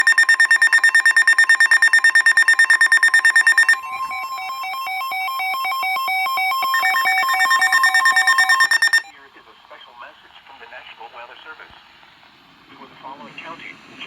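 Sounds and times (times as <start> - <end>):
emergency alert tones: 0.0 - 9.1.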